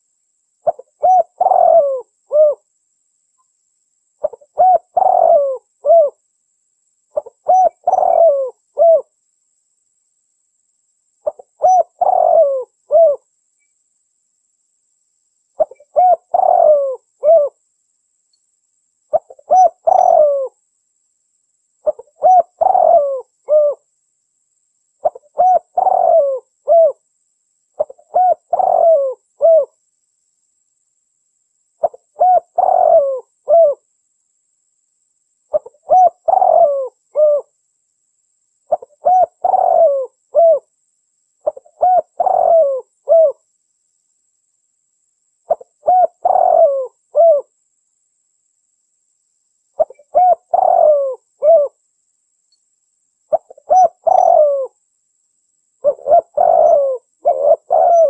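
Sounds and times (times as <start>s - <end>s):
dove cooing call: 0.6s - 2.6s, 4.2s - 6.2s, 7.1s - 9.1s, 11.2s - 13.3s, 15.6s - 17.6s, 19.1s - 20.6s, 21.8s - 23.9s, 25.0s - 27.0s, 27.8s - 29.8s, 31.8s - 33.8s, 35.5s - 37.5s, 38.7s - 40.7s, 41.4s - 43.5s, 45.5s - 47.5s, 49.8s - 51.8s, 53.3s - 54.8s, 55.8s - 58.0s.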